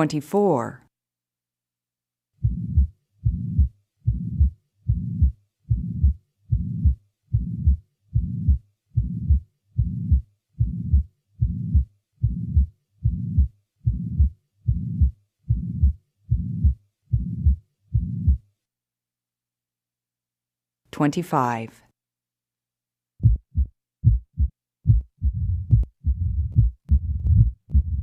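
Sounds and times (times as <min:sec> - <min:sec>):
heartbeat with murmur: 0:02.4 - 0:18.4, 0:23.2 - 0:28.0.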